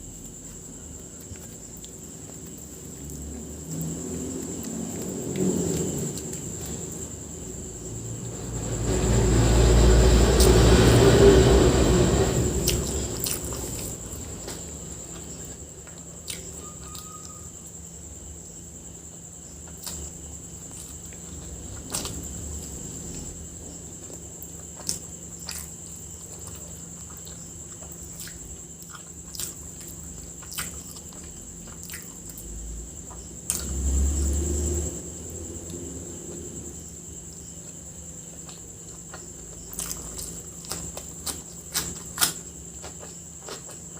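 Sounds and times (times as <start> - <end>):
loud low rumble: 3.2 - 14.2
person chewing food: 12.6 - 17.3, 19.6 - 23.3, 24.1 - 32.5, 37.6 - 43.9.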